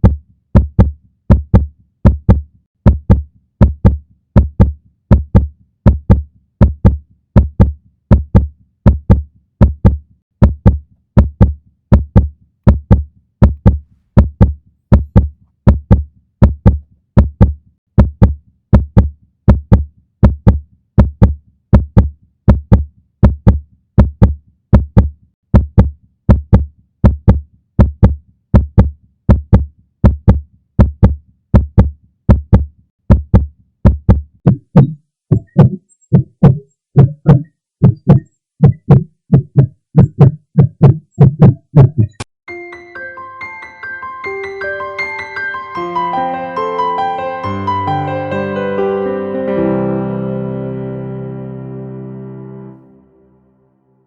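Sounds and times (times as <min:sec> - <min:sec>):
heartbeat double thumps: 0:00.0 - 0:42.2.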